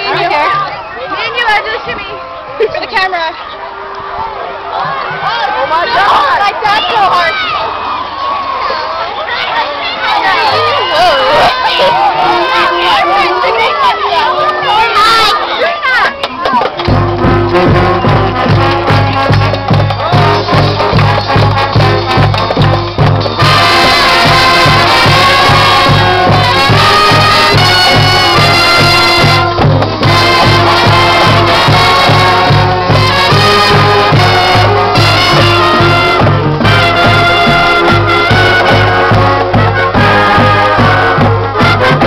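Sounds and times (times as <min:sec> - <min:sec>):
upbeat brass music: 0:09.8 - 0:42.0.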